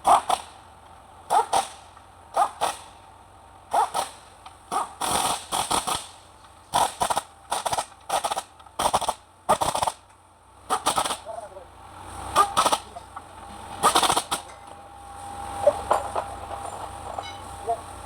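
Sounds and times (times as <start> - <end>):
metal tools clanking: 12.4 - 14.9, 15.6 - 18.0.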